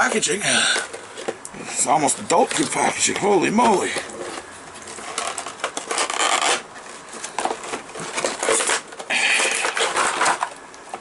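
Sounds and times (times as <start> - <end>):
cardboard box being torn open: 5.0 - 10.6.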